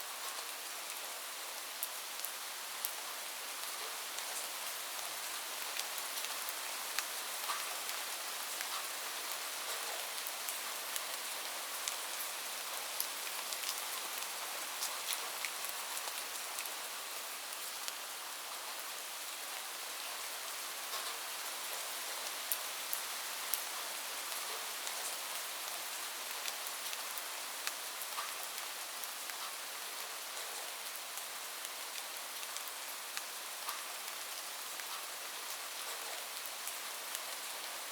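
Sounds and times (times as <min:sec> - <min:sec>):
raindrops ticking on a surface: 0:00.1 - 0:37.9.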